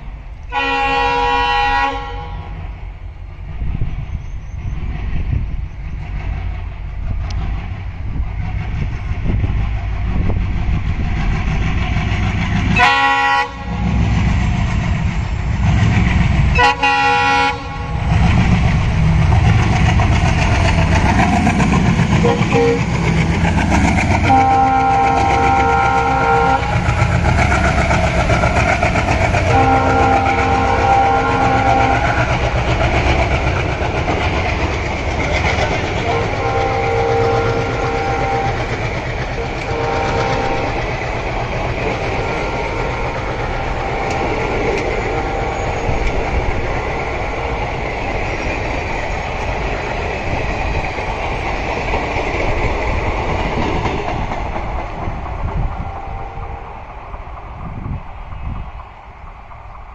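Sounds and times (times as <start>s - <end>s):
diesel locomotive engine rumble: 0.0s - 59.9s
locomotive horn blasts: 0.5s - 2.6s, 12.8s - 14.0s, 16.5s - 18.0s, 22.2s - 23.0s, 24.2s - 26.8s, 29.4s - 32.3s, 36.0s - 38.7s, 39.4s - 40.8s, 41.9s - 46.2s, 55.8s - 56.7s.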